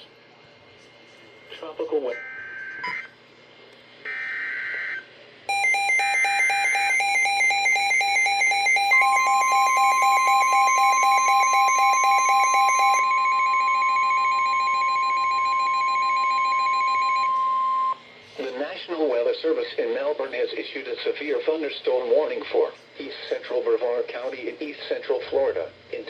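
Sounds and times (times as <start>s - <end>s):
rapidly pulsing electronic alarm: 4.1s - 18.0s
steady single alarm tone: 4.1s - 18.0s.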